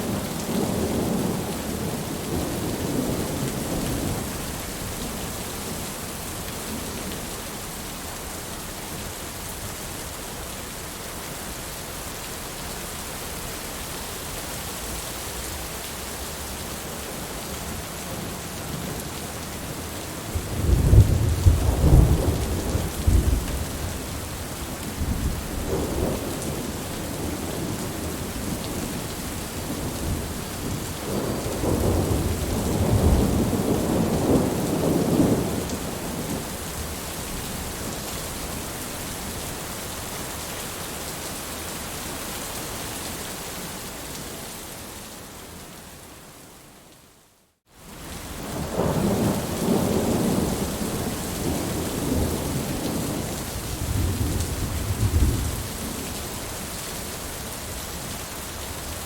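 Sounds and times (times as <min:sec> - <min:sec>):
steady rain: 0:00.0 - 0:59.0
rolling thunder: 0:20.3 - 0:24.2, 0:24.9 - 0:36.5, 0:48.5 - 0:56.2.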